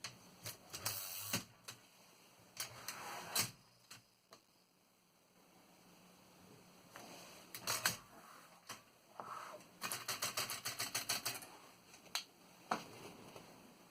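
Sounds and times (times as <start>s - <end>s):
manual typewriter keystrokes: 9.8s - 11.4s.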